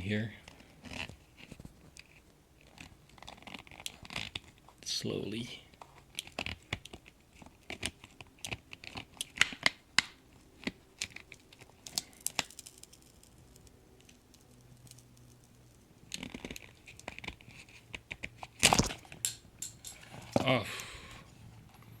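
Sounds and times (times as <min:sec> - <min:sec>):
scraping and crackling: 0:00.5 - 0:04.8, 0:10.6 - 0:20.6.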